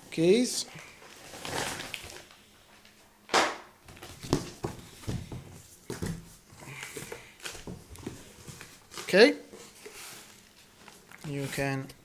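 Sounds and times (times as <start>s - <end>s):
cardboard box rustling scrape: 1.1s - 2.2s, 7.0s - 10.5s.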